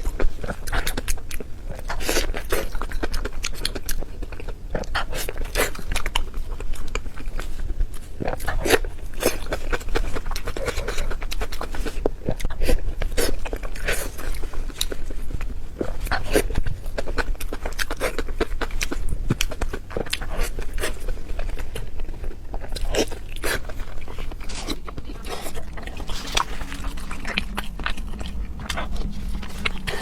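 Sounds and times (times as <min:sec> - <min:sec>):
wet chewing and lip-smacking: 0:00.0 - 0:30.0
mouth clicks and squelches: 0:15.8 - 0:30.0.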